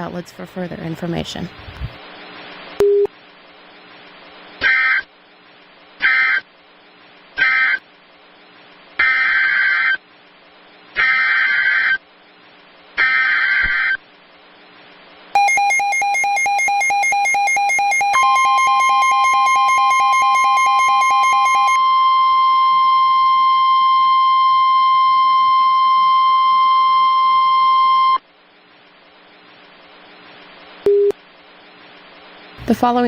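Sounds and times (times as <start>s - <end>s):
rapidly pulsing electronic beep: 15.4s - 21.8s
steady warning alarm tone: 15.4s - 28.2s.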